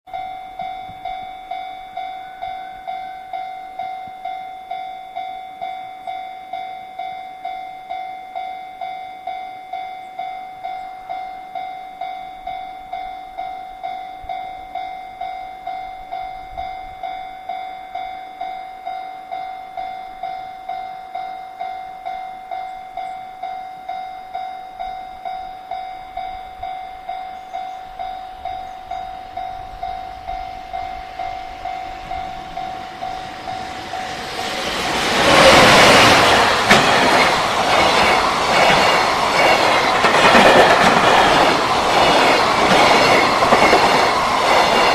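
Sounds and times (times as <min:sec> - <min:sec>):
level crossing warning bell: 0:00.1 - 0:44.9.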